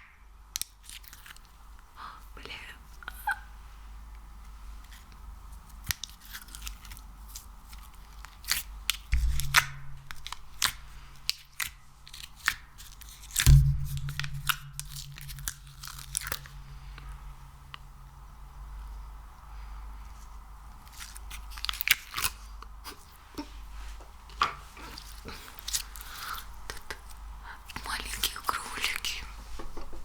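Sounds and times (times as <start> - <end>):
slime crackling and popping: 5.8 - 16.6
heavy thumps: 9.1 - 11.1, 13.5 - 16.7
low hum: 9.1 - 12.0, 13.4 - 19.3.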